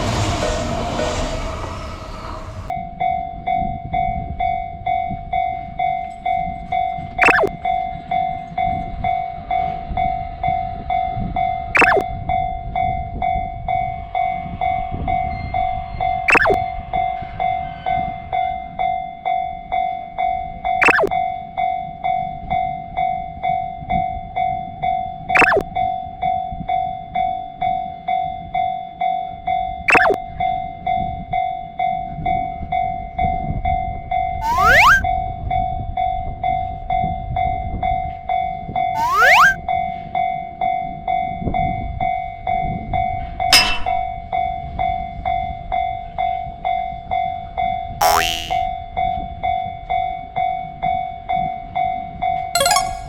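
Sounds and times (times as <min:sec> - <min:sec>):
train rumbling past: 0:00.0 - 0:02.7.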